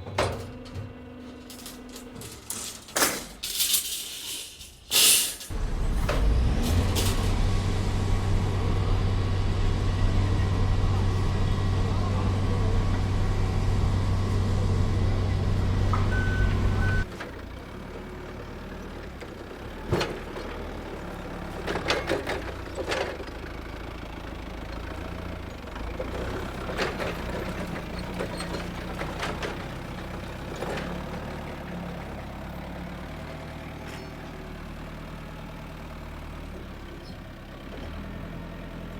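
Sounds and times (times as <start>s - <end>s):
heavy vehicle engine running: 0.0s - 3.0s, 5.4s - 38.9s
high beep: 15.9s - 17.0s.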